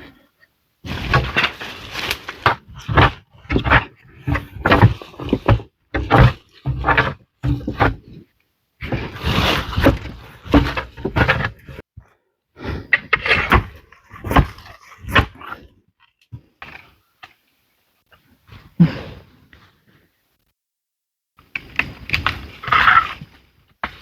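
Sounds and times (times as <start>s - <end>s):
scraping or rustling: 0.8s - 8.2s, 8.8s - 11.8s, 21.5s - 24.0s
knocks and thuds: 2.4s - 8.2s.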